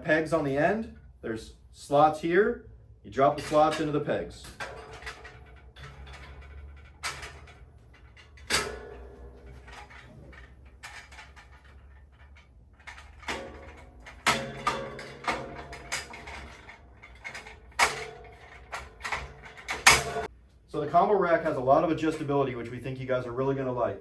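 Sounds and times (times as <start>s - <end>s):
rack parts knocking: 3.3s - 20.3s.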